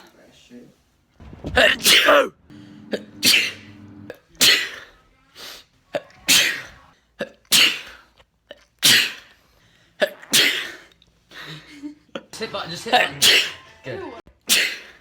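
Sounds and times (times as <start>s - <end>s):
man sneezing: 1.7s - 2.4s, 14.5s - 15.0s.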